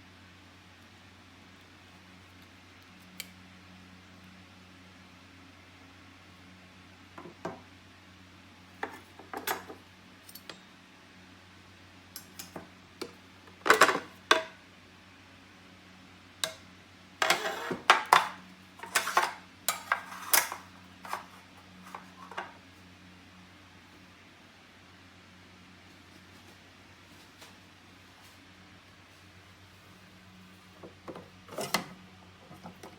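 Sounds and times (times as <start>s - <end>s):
kitchenware clinking and clattering: 8.8s - 9.8s, 13.7s - 14.6s, 17.2s - 22.6s.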